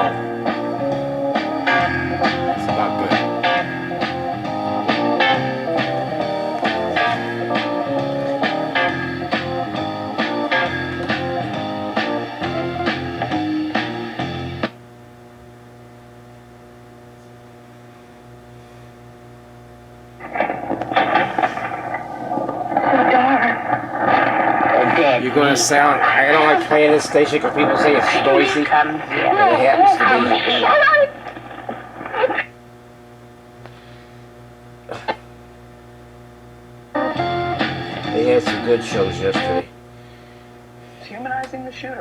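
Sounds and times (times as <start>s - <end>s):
music from radio: 0.0s - 14.8s, 20.2s - 32.6s, 36.9s - 39.7s
radio speaker mains hum: 0.0s - 42.0s
radio talk voice: 2.1s - 3.9s, 22.7s - 32.4s, 38.0s - 39.7s.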